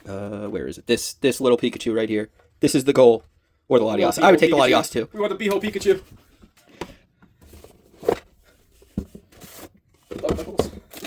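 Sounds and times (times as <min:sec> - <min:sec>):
faint paper rustling: 0:04.3 - 0:11.0.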